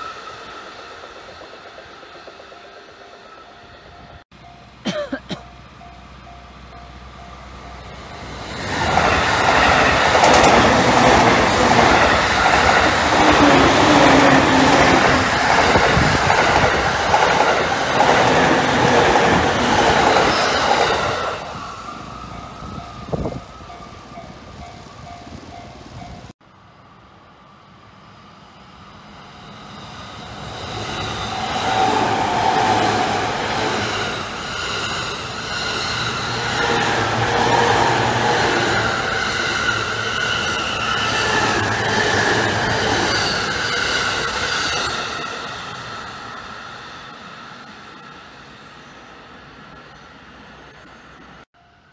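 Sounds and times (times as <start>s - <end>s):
electric train passing: 0.0s - 51.9s
crossing warning bell: 2.6s - 8.5s, 21.4s - 26.3s, 47.8s - 51.9s
train wheels clacking over rails: 8.3s - 21.4s.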